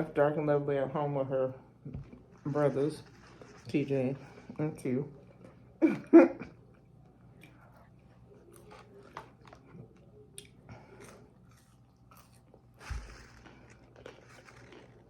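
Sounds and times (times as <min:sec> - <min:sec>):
person biting and chewing food: 0:07.4 - 0:15.0
small crackles: 0:11.1 - 0:15.0.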